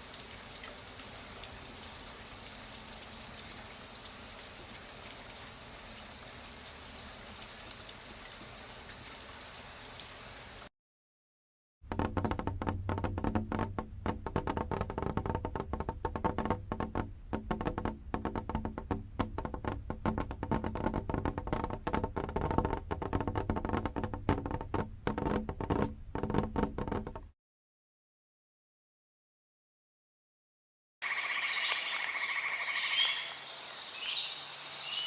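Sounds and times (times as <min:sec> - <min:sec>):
soft rain hiss: 0:00.0 - 0:10.7, 0:31.3 - 0:35.0
rapid patter over low tones: 0:11.8 - 0:27.3.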